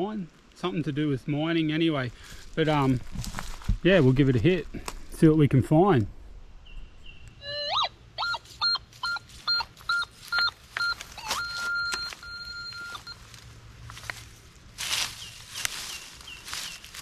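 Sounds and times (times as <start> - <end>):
metal detector beeping: 7.4 - 13.3.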